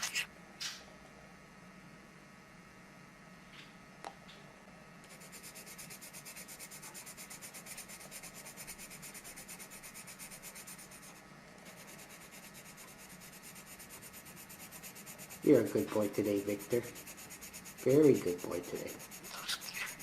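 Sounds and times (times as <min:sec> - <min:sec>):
faint scratching strokes: 0:05.1 - 0:20.0.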